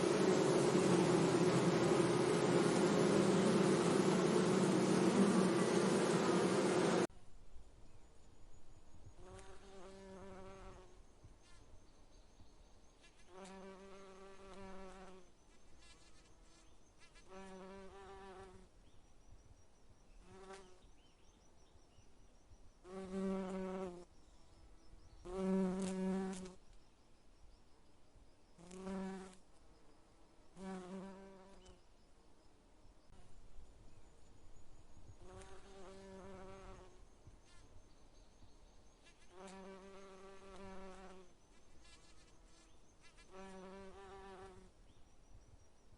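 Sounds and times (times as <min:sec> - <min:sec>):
bee buzzing: 0:00.0 - 0:07.1, 0:17.2 - 0:18.6, 0:25.3 - 0:26.6, 0:28.6 - 0:29.4, 0:35.3 - 0:37.6, 0:39.2 - 0:44.6.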